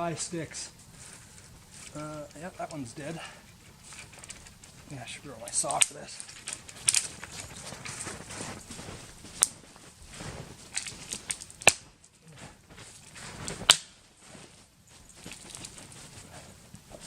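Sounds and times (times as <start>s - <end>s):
branches rustling and crackling: 0.0s - 17.0s
dry branches snapping: 5.4s - 9.7s, 10.6s - 14.0s.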